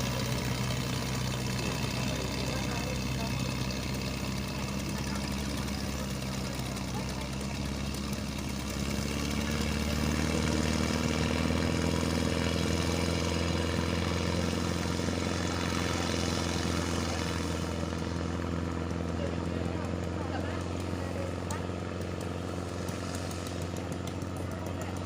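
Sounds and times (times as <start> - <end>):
engine running: 0.0 - 25.0.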